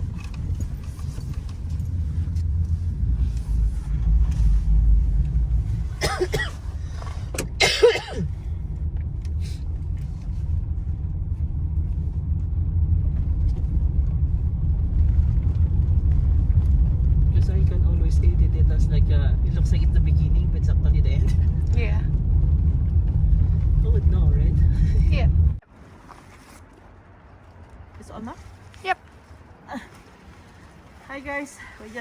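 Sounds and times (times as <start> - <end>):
car engine rumble inside cabin: 0.0 - 25.9.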